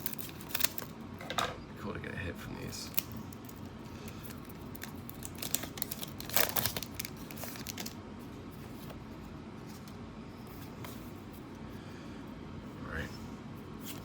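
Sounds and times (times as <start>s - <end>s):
foil wrapper crinkling and tearing: 0.0s - 1.0s, 2.8s - 8.0s.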